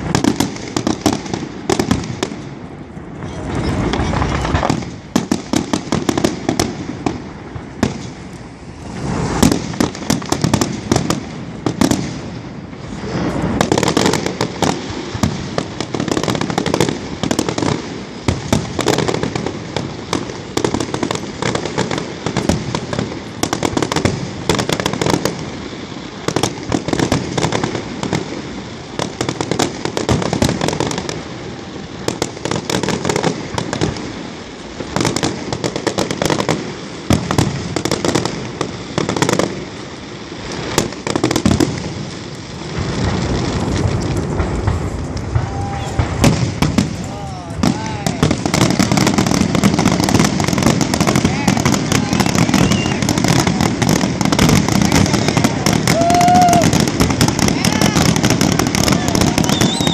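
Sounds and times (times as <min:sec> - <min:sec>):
firework bangs and crackles: 0:00.0 - 0:59.9
low rumble of booms: 0:42.7 - 0:49.5.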